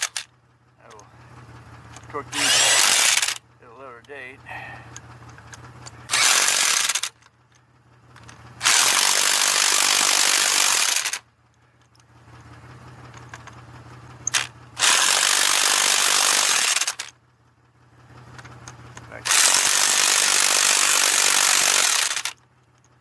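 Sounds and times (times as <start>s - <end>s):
handheld power tool running: 0.0s - 0.3s, 2.0s - 3.4s, 6.1s - 7.3s, 8.2s - 11.2s, 14.2s - 17.2s, 18.4s - 22.4s.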